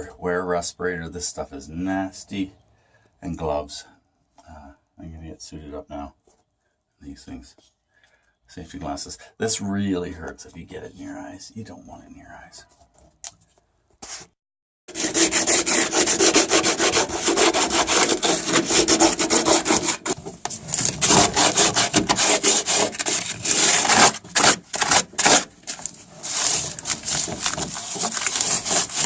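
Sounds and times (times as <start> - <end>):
sanding block rubbing fibreglass: 14.9 - 20.2, 20.8 - 25.5, 26.1 - 29.0.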